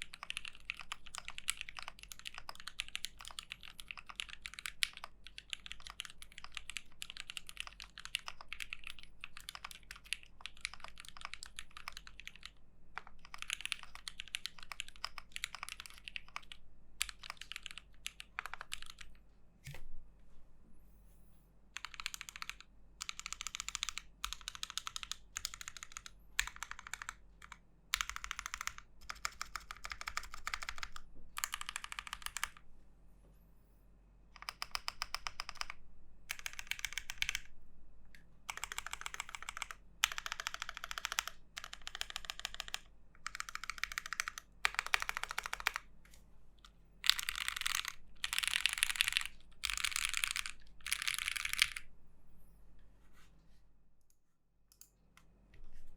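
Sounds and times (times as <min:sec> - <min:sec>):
mechanical keyboard typing: 0:00.0 - 0:19.8, 0:21.8 - 0:32.6, 0:34.4 - 0:37.5, 0:38.5 - 0:45.9, 0:46.6 - 0:51.9.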